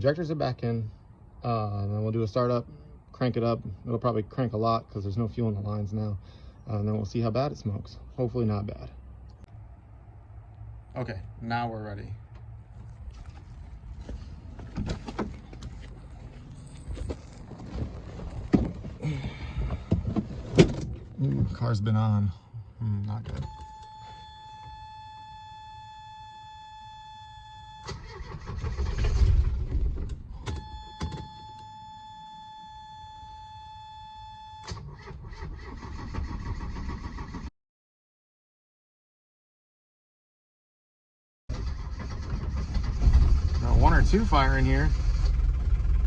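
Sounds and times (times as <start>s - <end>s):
diesel engine cranking: 12.3s - 21.6s, 27.8s - 30.7s, 34.6s - 37.5s, 41.5s - 46.0s
low steady rumble: 42.3s - 46.0s.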